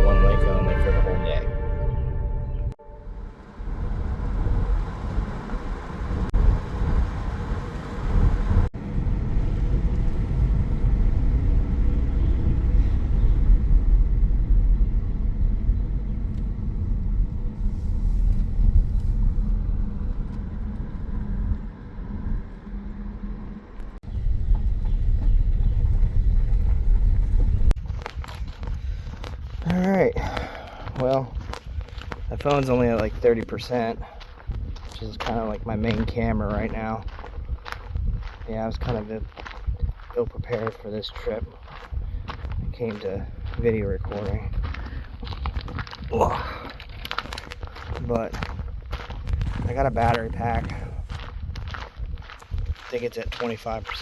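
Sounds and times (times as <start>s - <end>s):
car road and engine rumble: 2.8s - 29.4s.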